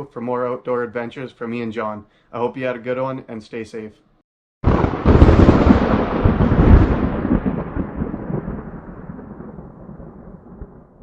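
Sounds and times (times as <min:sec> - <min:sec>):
thunder-like boom rumbling: 0:04.6 - 0:11.0.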